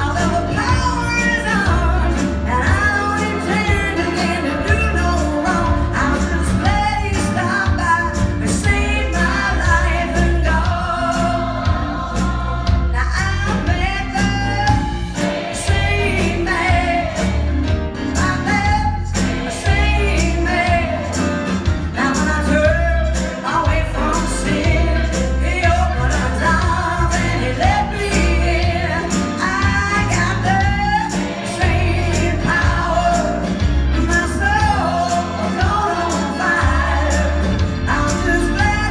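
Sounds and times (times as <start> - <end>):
drum beat: 0.0 - 38.9
lead singer and choir singing: 0.0 - 38.9
pulsing bass line: 0.0 - 38.9.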